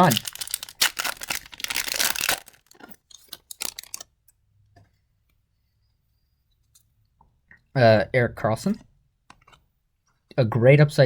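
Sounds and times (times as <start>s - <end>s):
wrapper crinkling and tearing: 0.0s - 4.1s.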